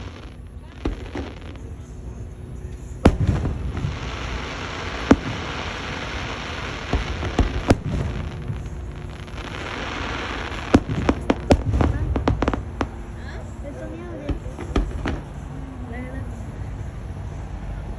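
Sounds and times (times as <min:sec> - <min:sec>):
firework bangs: 0:00.0 - 0:15.9
crackling hiss: 0:00.0 - 0:17.9
firework pops: 0:03.0 - 0:13.1, 0:14.2 - 0:15.4.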